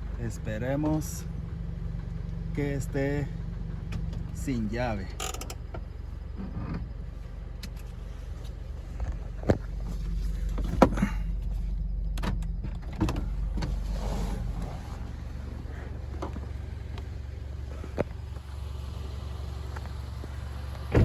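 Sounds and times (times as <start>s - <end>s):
vehicle engine idling: 0.0s - 21.0s.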